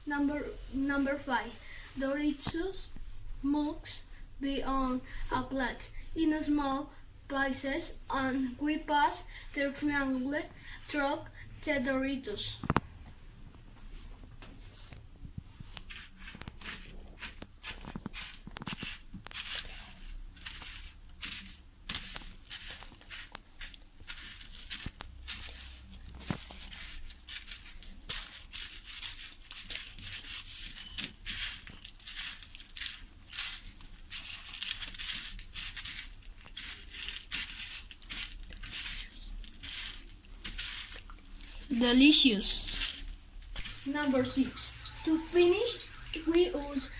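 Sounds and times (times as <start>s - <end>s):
crushed chips crunching: 15.9s - 46.9s.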